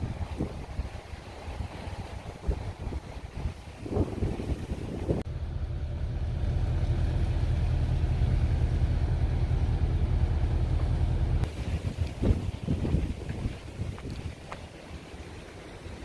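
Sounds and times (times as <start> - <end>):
vehicle engine rumbling: 4.2 - 14.9.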